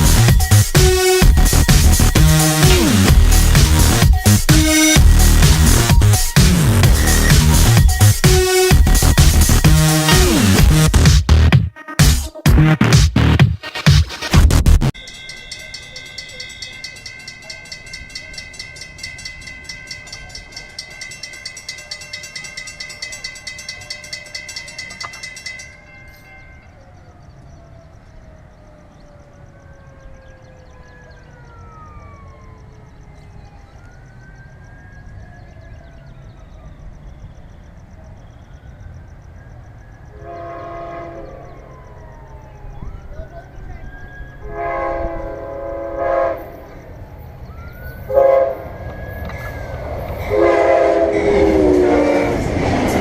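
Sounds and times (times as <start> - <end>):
train whining tones: 0.0 - 11.0, 13.6 - 53.0
train horn: 40.1 - 41.8, 44.4 - 46.7, 48.1 - 48.9, 50.2 - 52.5
train wheels clicking over rails: 47.5 - 53.0.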